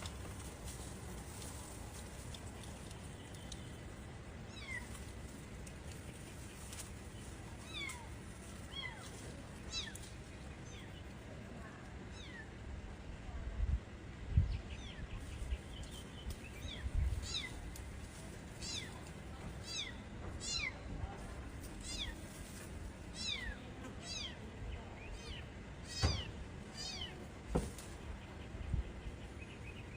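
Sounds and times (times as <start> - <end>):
kittens mewing: 25.8 - 27.2.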